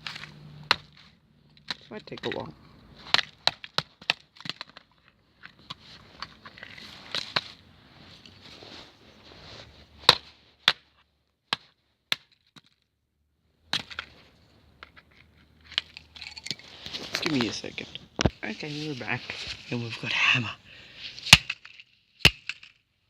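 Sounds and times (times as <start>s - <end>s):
knife stabbing plastic: 0.0s - 4.8s, 21.2s - 22.6s.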